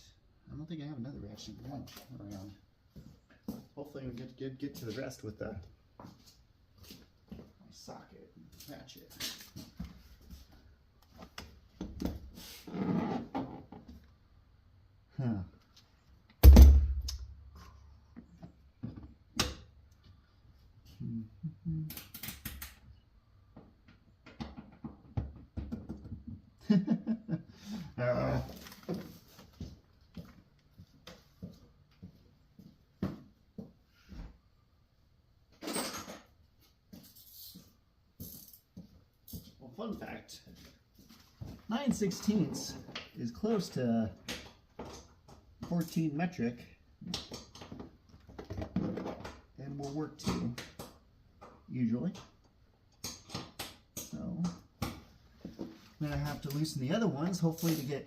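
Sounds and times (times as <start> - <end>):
hand tools knocking and clunking: 23.6 - 26.5.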